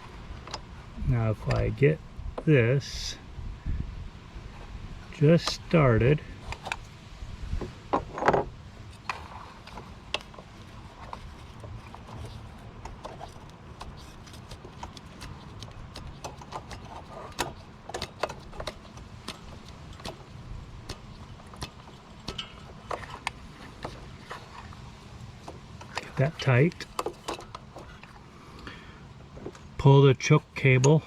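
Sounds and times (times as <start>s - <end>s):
small metal clicks: 11.0s - 24.8s.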